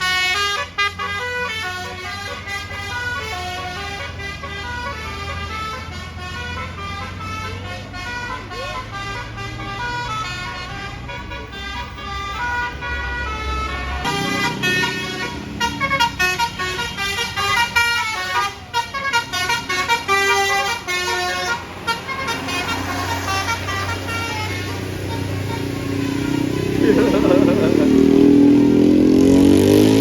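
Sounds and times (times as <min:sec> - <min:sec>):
bus horn playing a melody: 0:00.0 - 0:28.9
low engine hum: 0:21.4 - 0:30.0.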